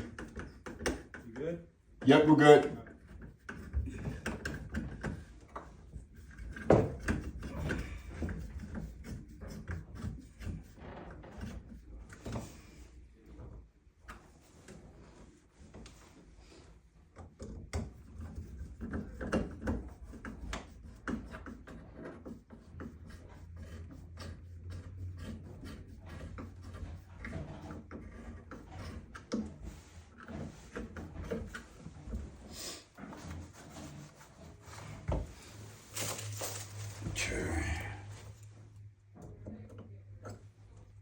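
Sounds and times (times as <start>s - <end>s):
tools knocking and clicking: 2.9s - 5.7s, 6.3s - 10.6s.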